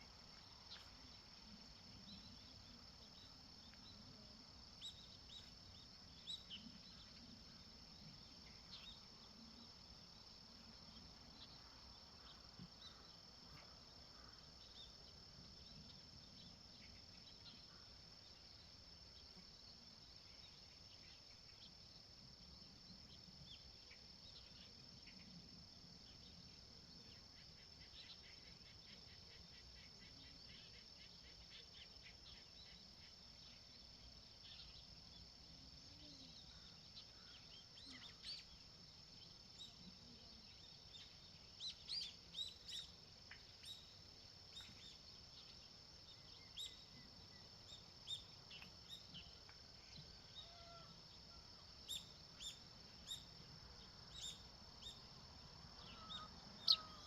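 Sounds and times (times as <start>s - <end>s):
high-pitched insect trill: 0.0s - 57.0s
birds chirping: 55.9s - 57.0s.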